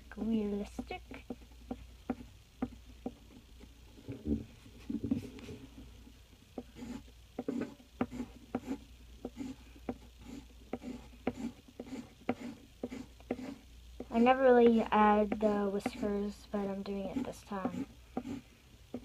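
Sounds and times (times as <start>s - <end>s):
drawing tool strokes on paper: 6.6s - 14.5s, 15.2s - 19.0s.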